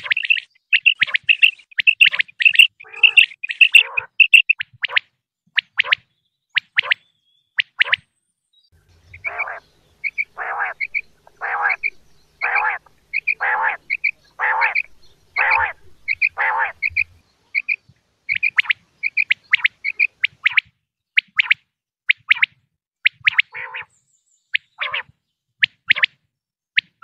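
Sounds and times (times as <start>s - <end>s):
quail calling: 0.0s - 6.0s, 7.6s - 8.0s, 9.1s - 23.9s, 24.6s - 26.1s
faint low hum: 8.8s - 20.2s.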